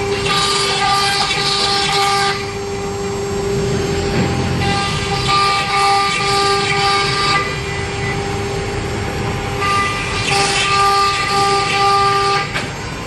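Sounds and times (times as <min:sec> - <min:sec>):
router spindle whining: 0:00.0 - 0:13.0
hiss of cutting: 0:09.6 - 0:12.5.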